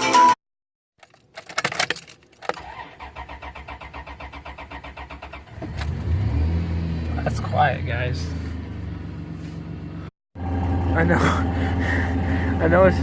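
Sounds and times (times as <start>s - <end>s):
engine cranking on starter: 1.5s - 6.4s
engine idling: 8.0s - 13.0s.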